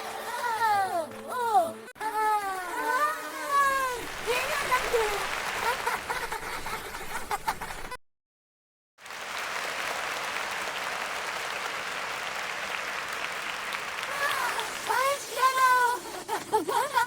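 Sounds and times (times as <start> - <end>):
applause: 0.0 - 1.5, 3.4 - 8.0, 9.0 - 15.7.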